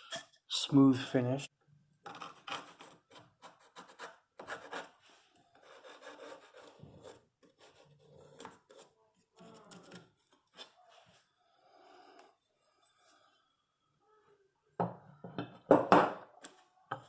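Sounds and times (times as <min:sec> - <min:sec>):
hand scraping wood: 0:02.1 - 0:10.8.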